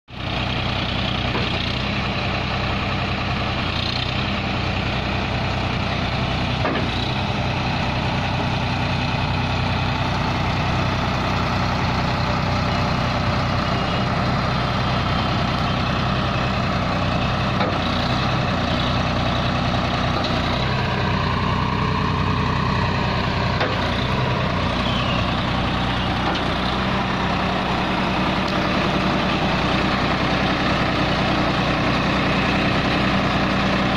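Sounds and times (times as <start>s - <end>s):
tractor diesel engine running: 0.1s - 33.9s.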